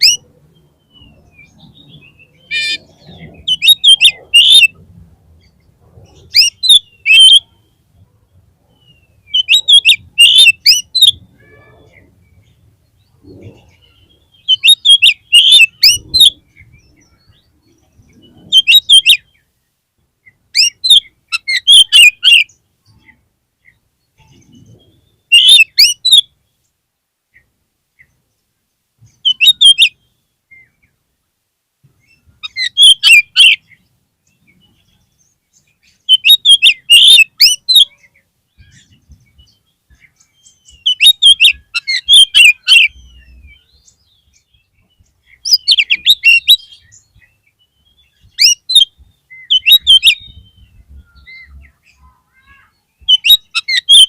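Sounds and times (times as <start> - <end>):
bird singing whistled phrases: 0.8 - 4.8, 6.3 - 7.6, 8.8 - 12.0, 13.6 - 17.4, 20.6 - 22.5, 24.2 - 26.2, 29.2 - 30.7, 32.4 - 33.6, 35.9 - 38.0, 40.2 - 43.8, 45.4 - 47.2, 47.8 - 54.0.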